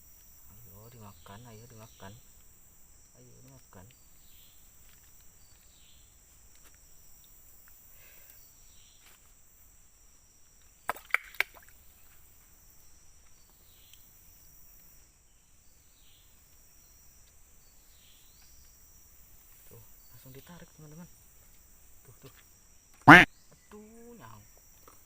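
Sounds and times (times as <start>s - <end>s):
high-pitched insect chorus: 0.0s - 25.0s
faint short falling calls: 23.1s - 23.3s.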